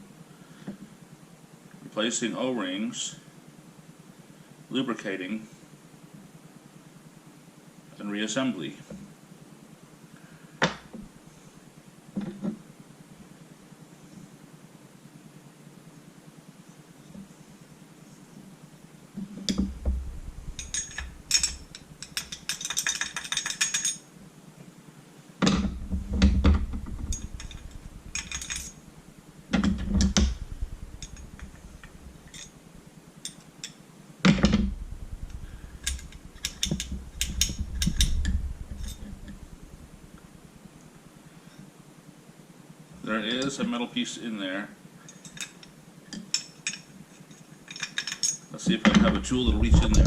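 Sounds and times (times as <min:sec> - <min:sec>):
rapid rattle of clicks: 0:19.5 - 0:24.0, 0:25.4 - 0:40.4
metal parts clinking: 0:20.4 - 0:24.0, 0:27.1 - 0:28.8, 0:46.4 - 0:48.4.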